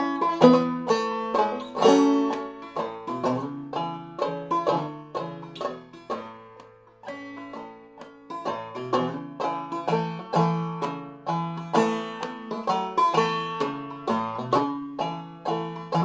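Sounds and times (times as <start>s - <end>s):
banjo playing waltz melody: 0.0s - 16.0s.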